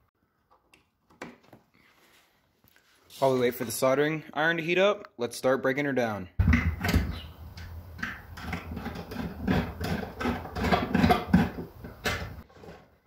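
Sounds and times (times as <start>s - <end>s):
hand tools clicking and knocking: 6.4s - 12.8s.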